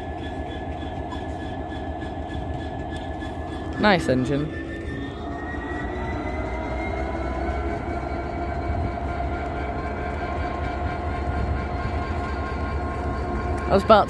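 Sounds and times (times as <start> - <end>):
idling diesel locomotive engine: 0.0 - 14.0.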